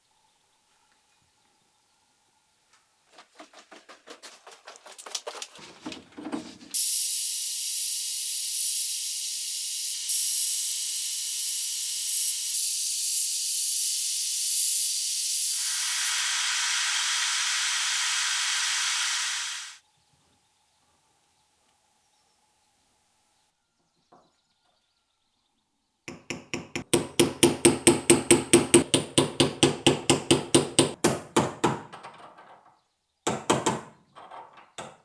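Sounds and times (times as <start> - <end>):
loud steady hiss: 6.8 - 19.8
short strokes: 15.4 - 19.8.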